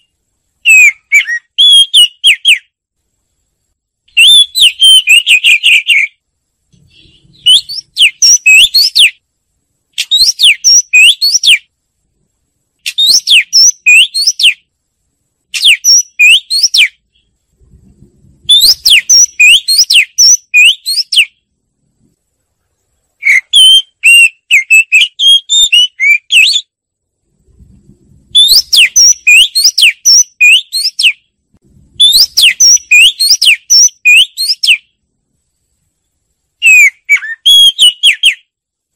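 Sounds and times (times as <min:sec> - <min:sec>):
bird singing whistled notes: 0:00.0 - 0:02.8, 0:04.1 - 0:06.2, 0:06.8 - 0:09.2, 0:10.0 - 0:11.7, 0:12.8 - 0:14.7, 0:15.6 - 0:17.4, 0:18.4 - 0:21.5, 0:23.2 - 0:26.8, 0:28.3 - 0:31.3, 0:32.0 - 0:35.0, 0:36.6 - 0:38.5.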